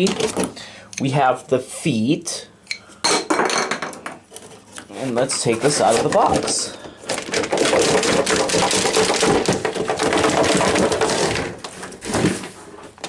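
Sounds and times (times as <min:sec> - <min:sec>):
cardboard box scraping and rustling: 0:04.4 - 0:13.0.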